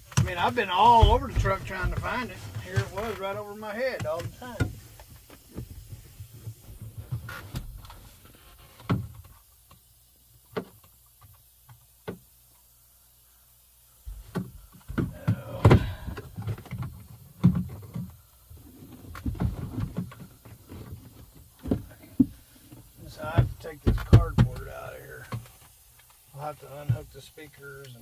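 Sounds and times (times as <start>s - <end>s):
bumping and rustling: 0.0s - 3.3s, 14.1s - 25.7s
knocks against panels: 23.4s - 25.4s.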